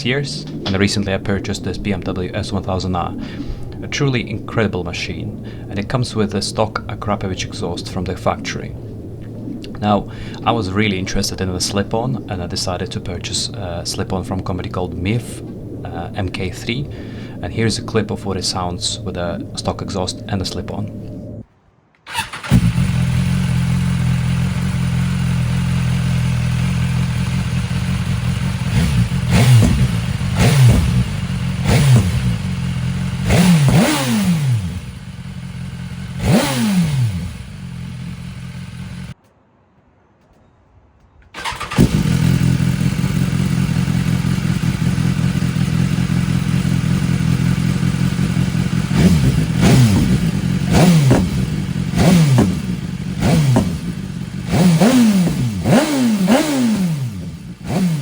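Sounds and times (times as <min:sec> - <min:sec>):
motorcycle engine idling and revving: 0:22.1 - 0:39.2, 0:41.4 - 0:58.0.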